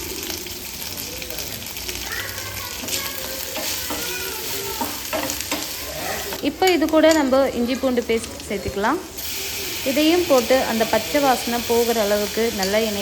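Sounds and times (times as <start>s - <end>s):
vegetables sizzling in hot oil: 0.0s - 13.0s
spatula scraping and knocking pan: 2.8s - 6.4s.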